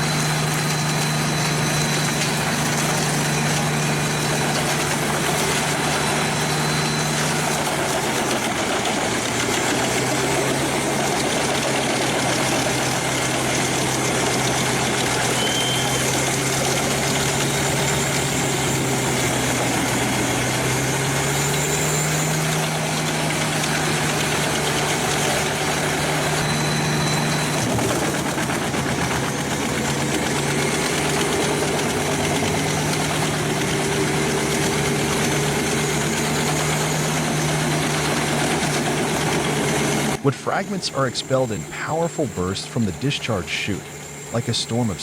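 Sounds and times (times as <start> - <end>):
wood chipper engine humming: 0.0 - 45.0
chipper drum noise: 22.5 - 36.5.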